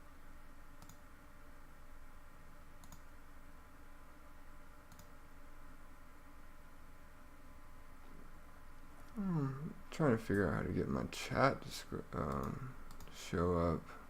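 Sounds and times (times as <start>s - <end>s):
faint background hum: 0.0s - 14.0s
computer mouse clicks: 0.7s - 1.0s, 2.8s - 3.1s, 4.8s - 5.2s, 12.3s - 13.2s.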